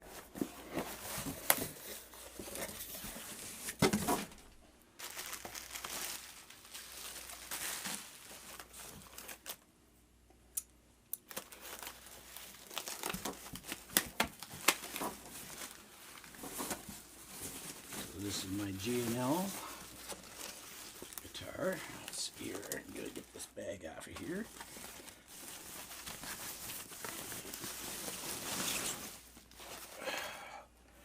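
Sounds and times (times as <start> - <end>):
packaging crinkling and tearing: 5.0 - 9.6, 11.2 - 30.0.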